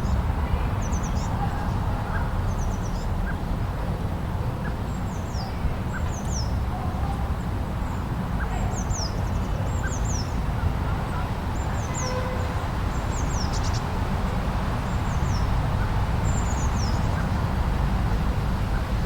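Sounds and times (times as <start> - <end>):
birds chirping: 11.1 - 14.0, 14.9 - 17.6.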